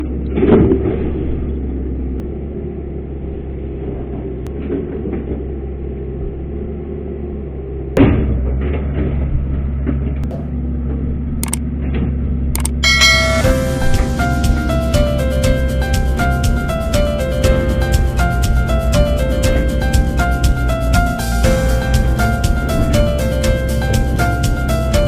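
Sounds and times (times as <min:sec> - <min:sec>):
excavator diesel engine running: 0:12.6 - 0:25.0.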